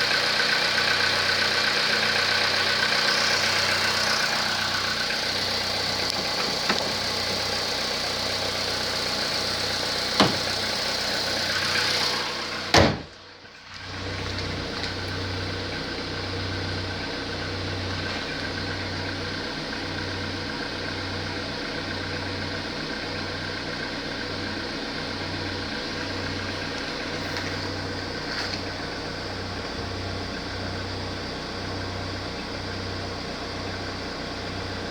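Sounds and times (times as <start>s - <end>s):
loud engine knock: 0.0s - 13.2s
car engine idling: 0.0s - 34.9s.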